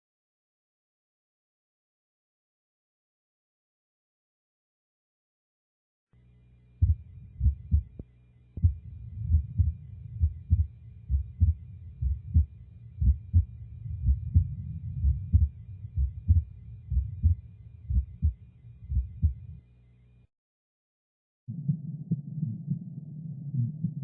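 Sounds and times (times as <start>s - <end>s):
faint steady hum: 6.2s - 20.3s
heartbeat lub-dub: 6.8s - 8.0s, 8.6s - 19.6s.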